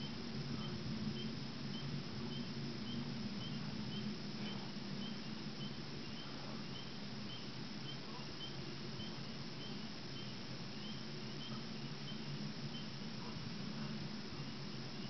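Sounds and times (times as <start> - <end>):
faint high chirps: 0.0 - 15.0.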